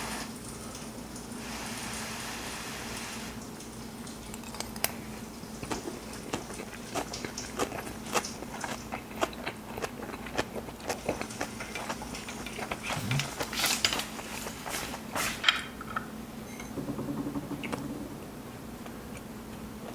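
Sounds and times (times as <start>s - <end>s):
crunchy chewing: 5.6s - 15.3s.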